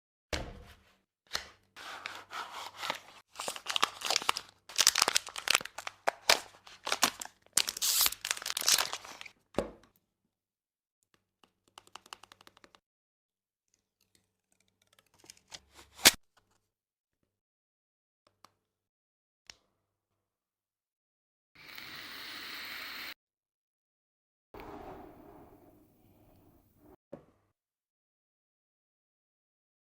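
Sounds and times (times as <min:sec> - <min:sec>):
packaging torn and crinkled: 0:02.8 - 0:09.3.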